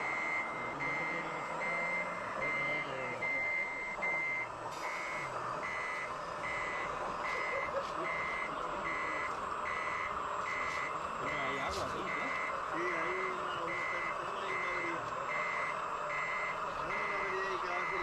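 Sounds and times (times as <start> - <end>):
toy truck reversing alarm beeping: 0.0 - 18.0.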